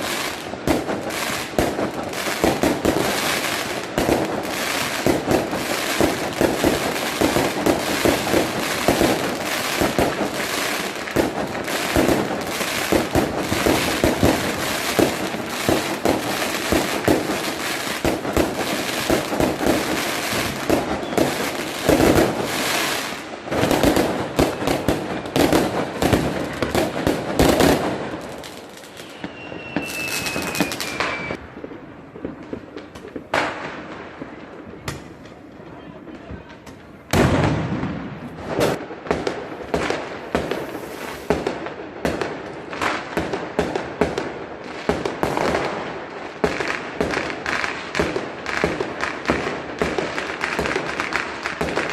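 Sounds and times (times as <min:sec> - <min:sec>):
fireworks and firecrackers banging: 0:00.0 - 0:51.9
thin falling whistle: 0:29.0 - 0:31.4.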